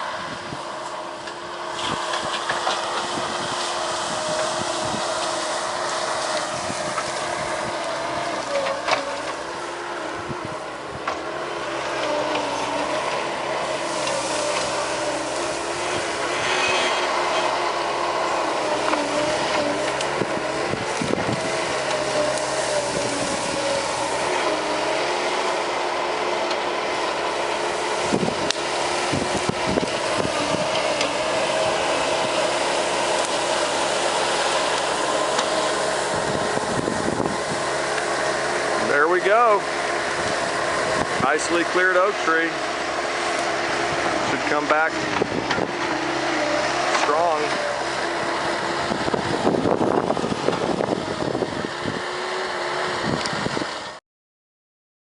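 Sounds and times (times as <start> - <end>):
diesel engine under load: 0.0 - 54.0.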